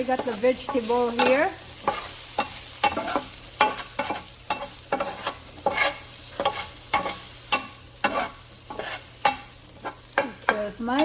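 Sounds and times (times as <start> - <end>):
utensil scraping a pan: 0.0 - 11.0
vegetables sizzling in frying pan: 0.0 - 11.0.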